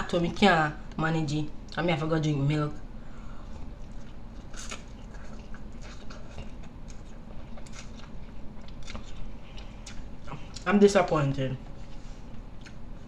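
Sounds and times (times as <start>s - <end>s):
person chewing noodles: 3.4s - 10.6s, 11.8s - 13.0s.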